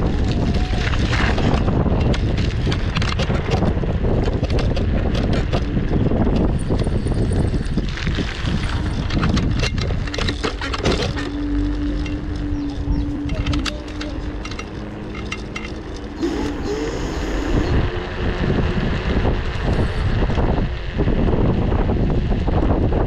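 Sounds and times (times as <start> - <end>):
off-road vehicle driving: 0.0 - 23.0
wind buffeting microphone: 0.0 - 23.0
knocks and rattles: 8.6 - 16.8.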